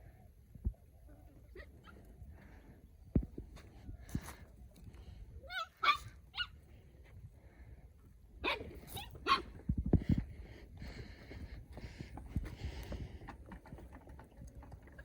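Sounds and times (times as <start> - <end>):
young canids yelping and whining: 5.5 - 6.6.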